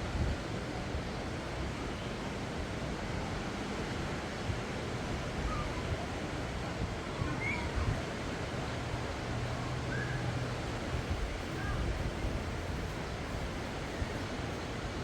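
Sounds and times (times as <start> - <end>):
wind rumble on microphone: 4.5 - 15.0
faint high-pitched calls: 9.9 - 10.4.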